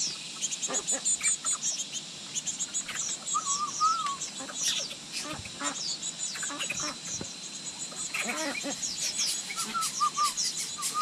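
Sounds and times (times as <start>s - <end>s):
lower bird calls: 0.0s - 11.0s
young birds cheeping: 0.0s - 11.0s
warbling bird whistle: 2.9s - 4.8s, 8.2s - 11.0s.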